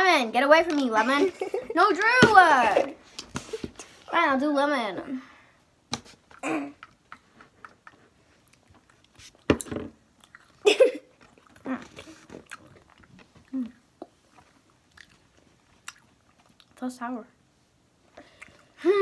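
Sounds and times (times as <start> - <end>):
person chewing candy: 6.7 - 9.5, 10.2 - 10.6, 11.2 - 16.8.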